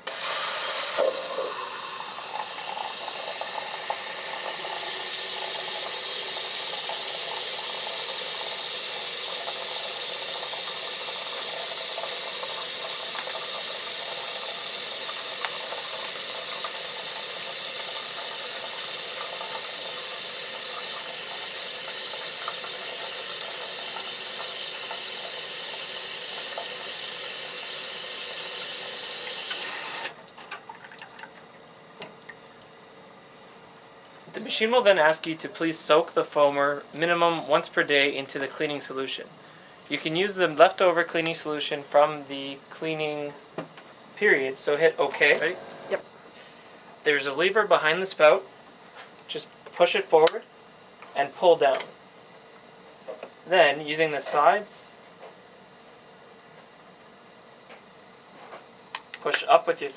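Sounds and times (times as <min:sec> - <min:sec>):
steam and water hissing: 0:00.0 - 0:30.2.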